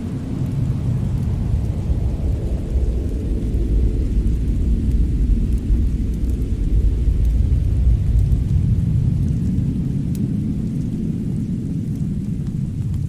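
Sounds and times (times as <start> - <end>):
faint fire crackles: 0.0 - 13.0
low storm rumble: 0.0 - 13.0.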